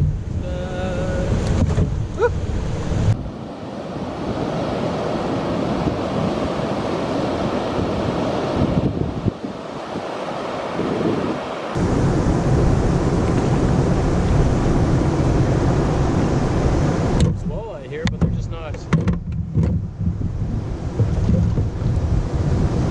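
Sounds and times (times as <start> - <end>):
wind rumbling on microphone: 0.0 - 22.9
water rushing over rapids: 0.4 - 18.7.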